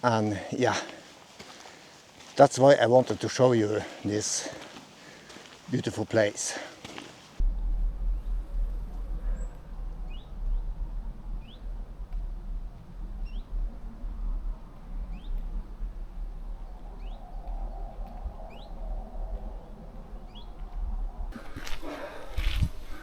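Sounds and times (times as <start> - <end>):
steady low rumble: 7.4 - 23.0.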